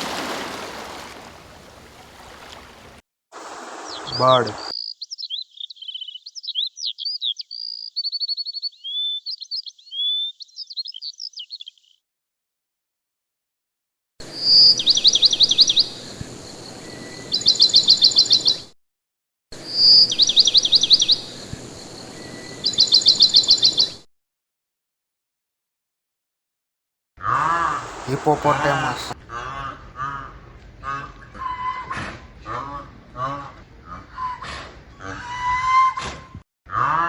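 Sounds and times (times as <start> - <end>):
songbird whistles and trills: 3.8 - 11.8, 14.4 - 16.0, 19.7 - 21.4, 22.2 - 24.0.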